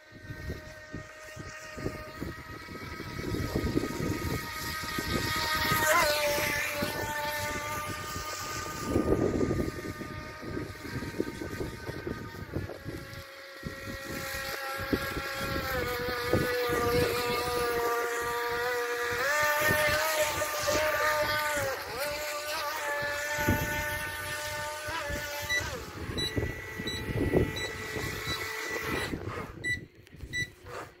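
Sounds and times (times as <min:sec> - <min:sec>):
wind buffeting microphone: 0:00.0 - 0:30.9
toy boat motor whining: 0:00.0 - 0:31.0
short high beeps: 0:25.5 - 0:30.6.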